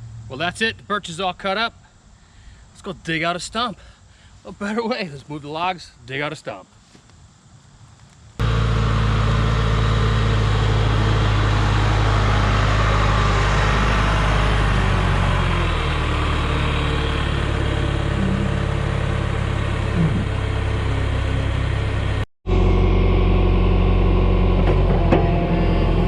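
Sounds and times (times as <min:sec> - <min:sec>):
diesel engine running: 0:08.4 - 0:26.0.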